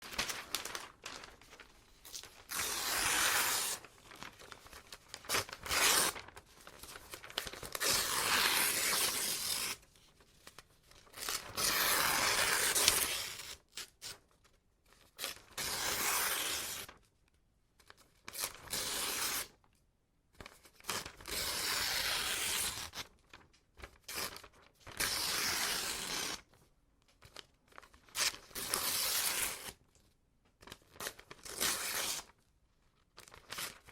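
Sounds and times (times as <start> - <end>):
paper ripping: 0.0 - 9.8, 11.1 - 13.6, 24.2 - 26.4
paper rustling and crinkling: 0.0 - 13.5.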